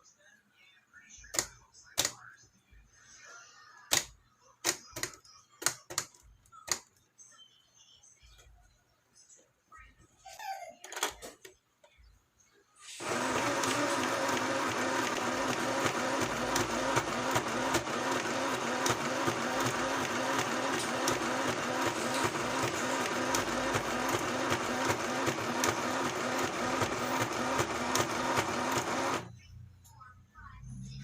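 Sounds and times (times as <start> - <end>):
sewing machine motor whine: 13.0 - 29.3.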